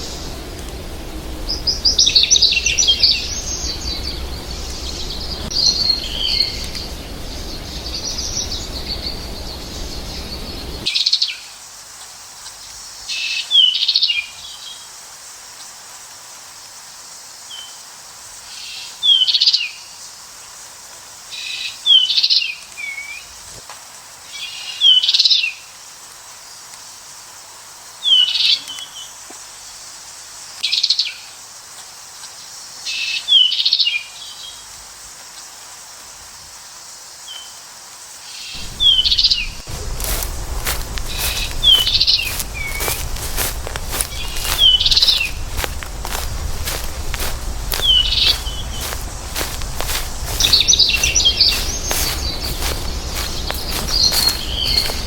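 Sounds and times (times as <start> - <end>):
bird chirping: 0.0 - 11.6, 38.4 - 55.0
background hiss: 0.0 - 55.0.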